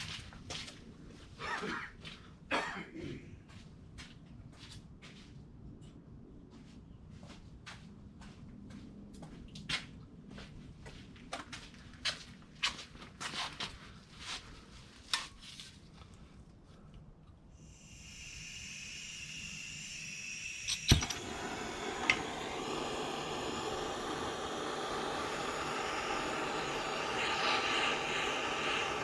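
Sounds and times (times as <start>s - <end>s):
gas torch hissing: 17.5s - 29.0s
sharp pop: 20.6s - 22.3s.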